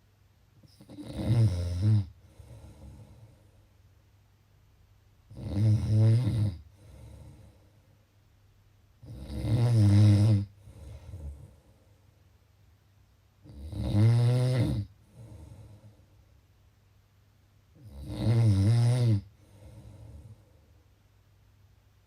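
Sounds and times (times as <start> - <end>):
person snoring: 0.7 - 3.4, 5.3 - 7.6, 9.0 - 11.8, 13.4 - 16.0, 17.8 - 20.4
soft breath sounds: 2.1 - 3.9, 6.6 - 8.2, 10.5 - 12.5, 14.9 - 16.6, 19.3 - 21.0.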